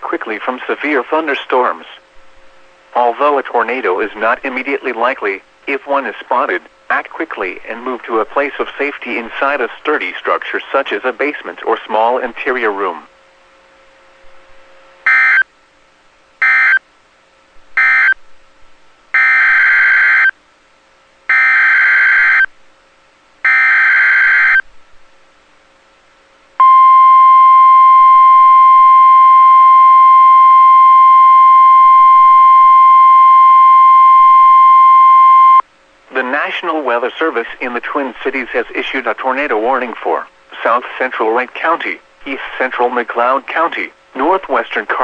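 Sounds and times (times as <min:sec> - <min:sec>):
loud steady warning tone: 0:15.0 - 0:15.5, 0:16.4 - 0:16.8, 0:17.8 - 0:18.2, 0:19.1 - 0:20.4, 0:21.3 - 0:22.6, 0:23.4 - 0:24.7, 0:26.6 - 0:35.6.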